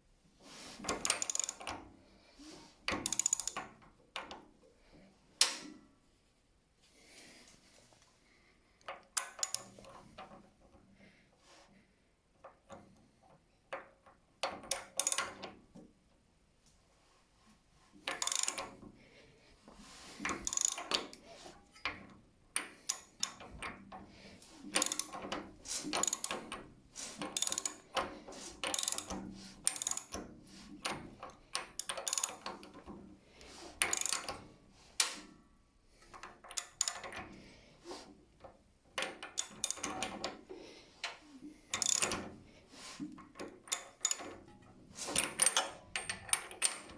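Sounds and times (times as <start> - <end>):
mechanical clicking and ratcheting: 1.0 - 1.8, 3.0 - 3.7, 18.1 - 18.7, 20.3 - 21.2, 24.7 - 32.9, 33.8 - 34.4, 36.5 - 37.3, 39.0 - 40.2, 41.7 - 42.3, 43.4 - 46.9.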